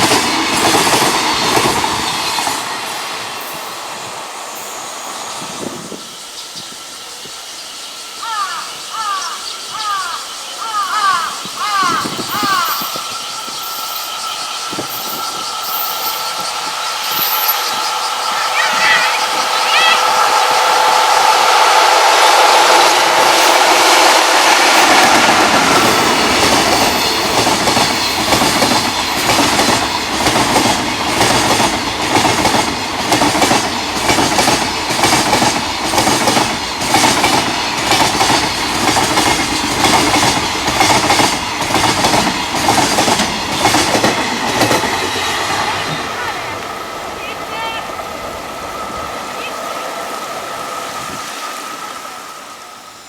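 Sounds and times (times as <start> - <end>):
traction motors whining: 10.7 - 21.6
wagons clattering over rail joints: 11.4 - 20.0, 24.7 - 46.5.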